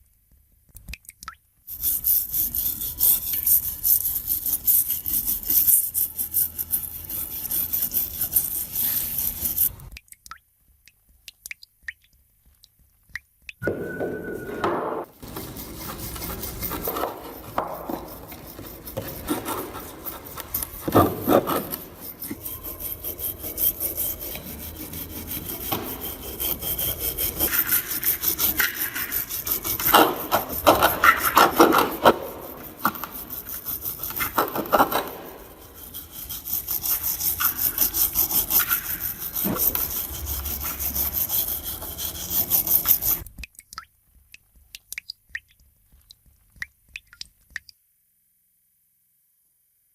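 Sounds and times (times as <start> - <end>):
scrubbing on rusted metal: 1.7 - 9.9, 13.8 - 43.3.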